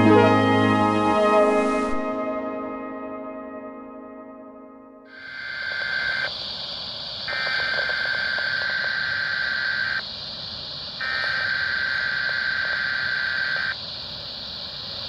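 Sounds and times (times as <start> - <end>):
radio hiss: 5.1 - 15.0.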